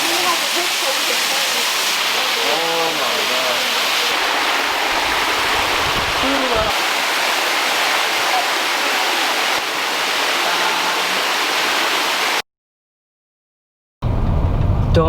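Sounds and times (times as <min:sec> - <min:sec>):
waterfall rushing: 0:00.0 - 0:12.4
low rumble: 0:14.0 - 0:15.0.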